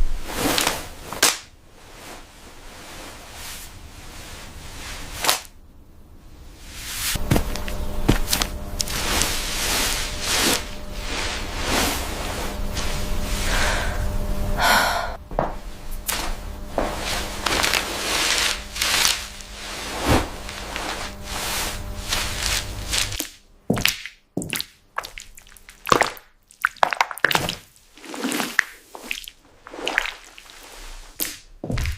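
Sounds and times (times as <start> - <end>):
steady low hum: 0.0 - 26.2
crisp crackles: 16.0 - 23.2, 25.0 - 31.9
crunching and chewing food: 25.0 - 30.6.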